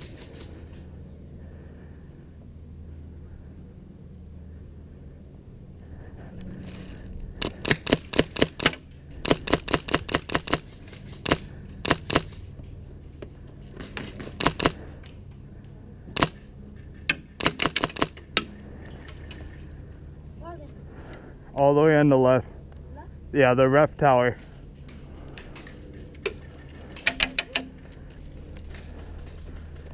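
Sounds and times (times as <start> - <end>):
airsoft guns firing: 7.4 - 12.5, 13.8 - 14.9, 16.2 - 16.5, 17.1 - 18.5.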